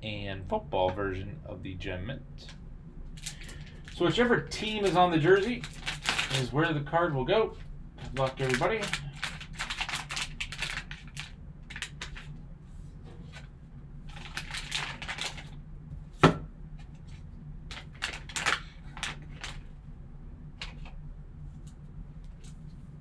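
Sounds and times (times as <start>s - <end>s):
low steady hum: 0.0s - 23.0s
card packaging crinkling: 3.2s - 6.8s, 8.0s - 12.3s, 14.1s - 15.5s, 17.7s - 19.6s.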